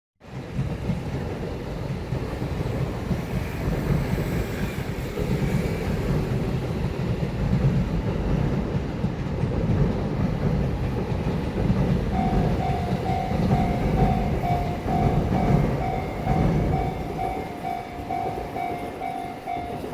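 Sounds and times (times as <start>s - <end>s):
train rumbling past: 0.2s - 19.9s
level crossing warning bell: 11.6s - 19.9s.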